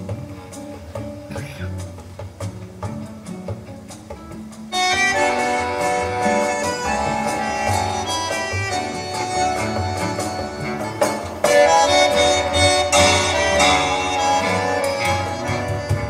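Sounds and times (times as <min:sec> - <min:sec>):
reedy melodic notes over loudspeaker: 0:04.7 - 0:16.0.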